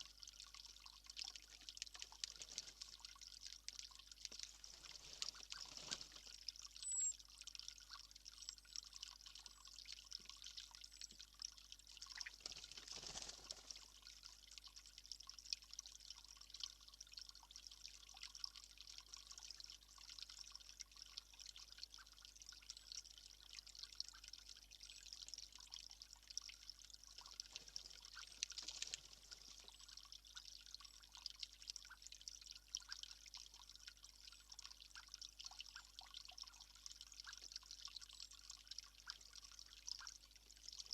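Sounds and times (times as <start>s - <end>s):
water trickling and dripping: 0.0s - 40.9s.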